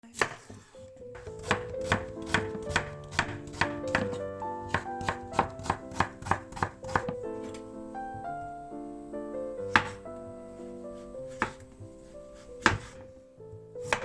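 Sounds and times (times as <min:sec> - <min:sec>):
background music: 0:00.0 - 0:14.0
knife chopping on cutting board: 0:00.2 - 0:07.2, 0:09.7 - 0:10.0, 0:11.3 - 0:11.7, 0:12.4 - 0:13.1.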